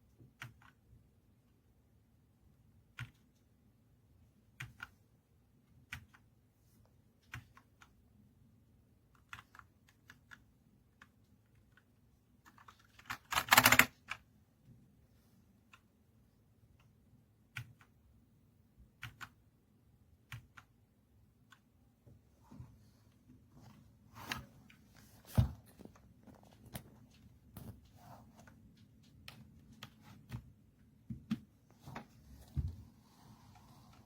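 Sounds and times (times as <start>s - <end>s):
mechanical keyboard clicks: 12.5s - 14.2s.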